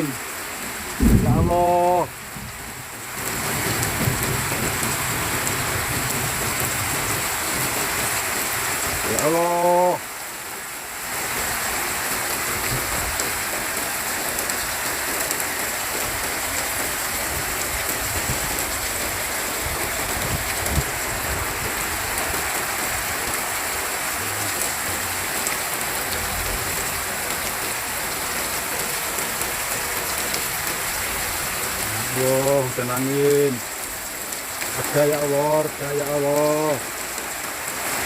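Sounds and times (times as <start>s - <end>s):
heavy rain pouring: 0.0s - 38.0s
low thumps: 1.0s - 2.7s
strong wind: 1.0s - 7.8s, 17.0s - 23.4s.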